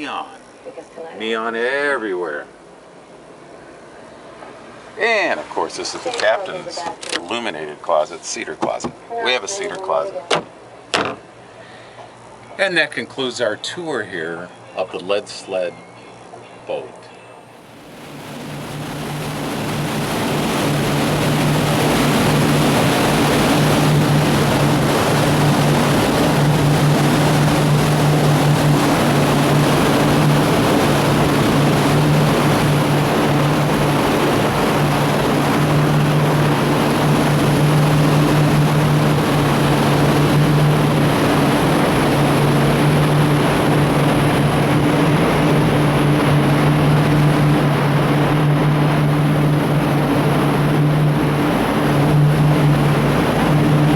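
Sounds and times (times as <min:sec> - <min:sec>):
boat engines droning: 0:00.0 - 0:53.9
rush of wind and water: 0:17.6 - 0:53.9.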